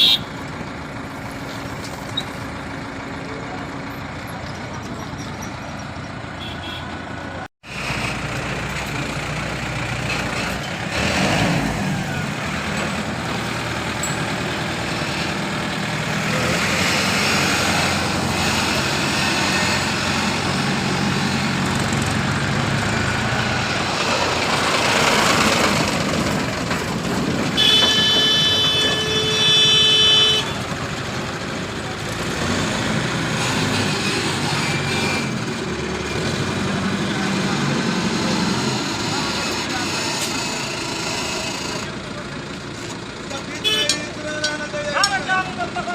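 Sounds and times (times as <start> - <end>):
vehicle horn blast: 0.0 - 0.3, 6.4 - 6.9, 27.6 - 30.6, 43.6 - 44.1
heavy vehicle engines running: 0.0 - 45.9.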